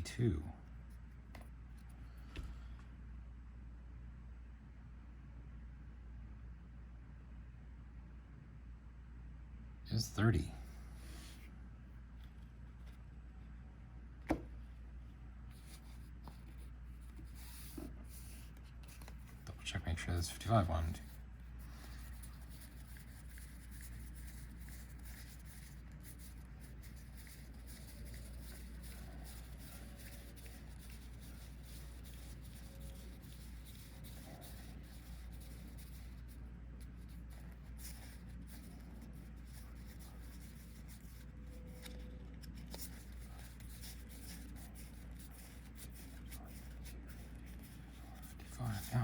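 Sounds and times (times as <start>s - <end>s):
low electrical hum: 0.0s - 49.0s
cards sliding and ticking: 15.5s - 19.6s, 20.3s - 49.0s.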